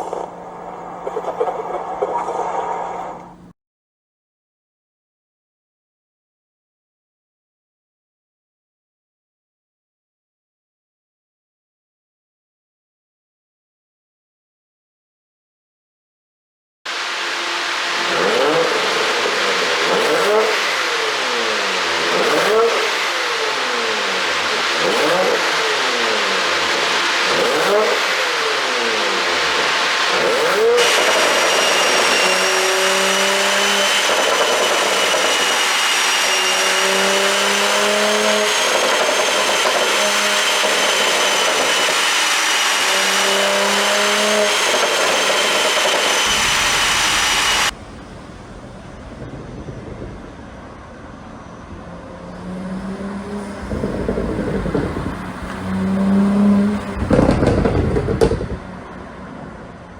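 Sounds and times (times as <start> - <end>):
car engine revving: 0.0 - 3.5, 16.9 - 49.4, 51.7 - 59.4
high whine: 0.0 - 3.5, 16.9 - 58.8.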